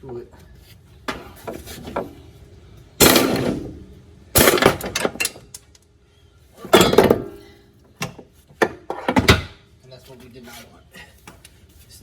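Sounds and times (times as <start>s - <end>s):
metallic clunks and clatter: 3.0s - 3.8s, 4.4s - 5.6s, 6.7s - 9.6s.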